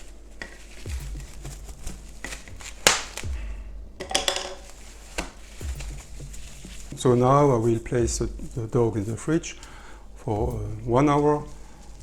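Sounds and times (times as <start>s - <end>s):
wrapping rustling and crinkling: 0.0s - 12.0s
sharp snap: 2.2s - 6.1s.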